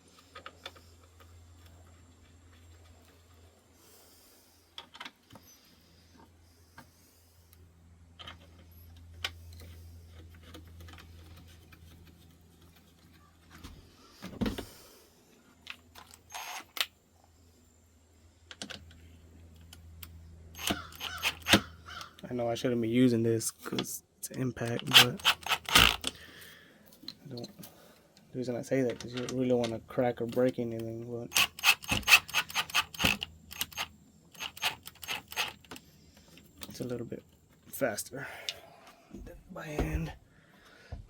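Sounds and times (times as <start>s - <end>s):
steady low hum: 0.0s - 41.0s
plastic parts clicking and knocking: 4.7s - 5.4s, 8.2s - 14.7s, 18.4s - 19.0s, 20.6s - 22.2s, 23.7s - 26.2s, 28.8s - 30.5s, 31.3s - 36.8s.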